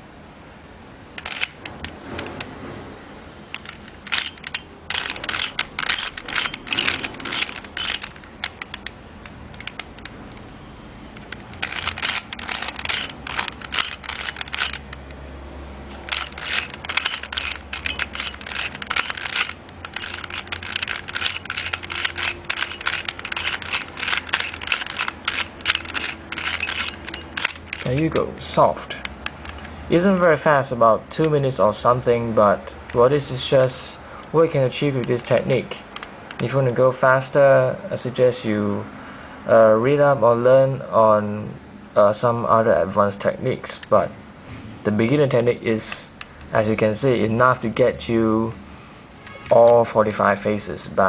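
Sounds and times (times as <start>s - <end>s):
puzzle cube layers clicking: 3.6s - 10.4s, 16.1s - 28.0s.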